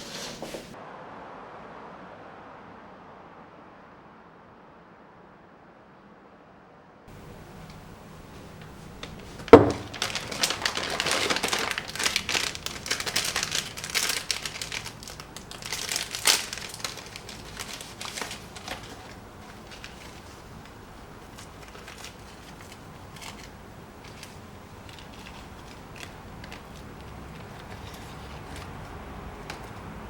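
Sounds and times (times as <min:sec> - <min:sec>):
crinkling and crackling: 0:07.1 - 0:30.0.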